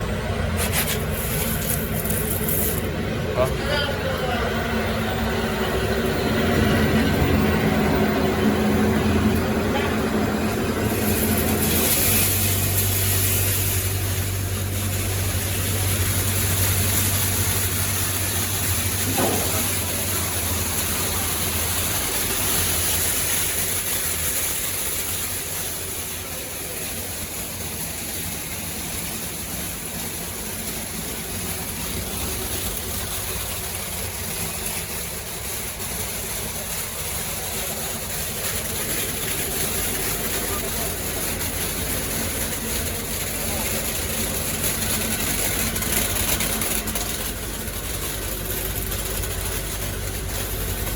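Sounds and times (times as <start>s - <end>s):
fan hiss: 0.0s - 50.9s
machinery hum: 0.0s - 50.9s.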